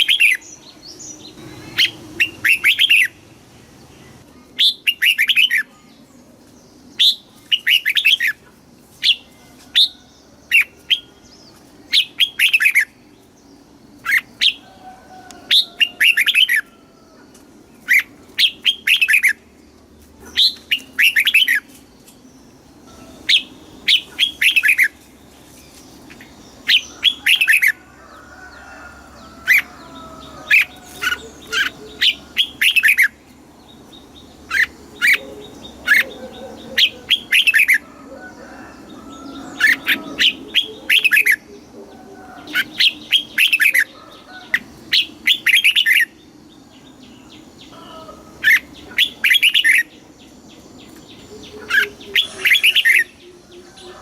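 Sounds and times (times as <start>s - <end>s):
bird singing whistled notes: 1.4s - 3.2s.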